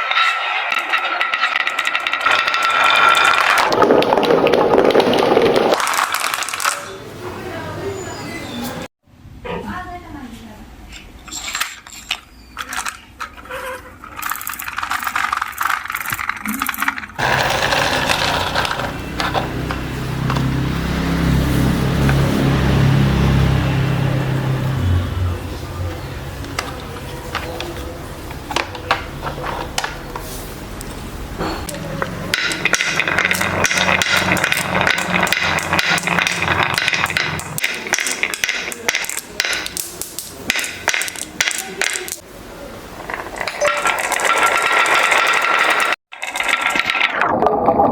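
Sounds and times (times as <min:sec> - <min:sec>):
toy pieces clicking and rattling: 0:00.0 - 0:07.0, 0:11.3 - 0:20.5, 0:31.7 - 0:42.2, 0:43.0 - 0:47.2.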